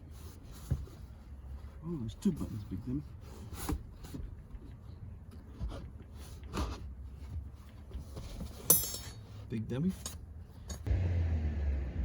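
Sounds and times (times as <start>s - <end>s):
knocks and rustling: 3.5s - 9.3s.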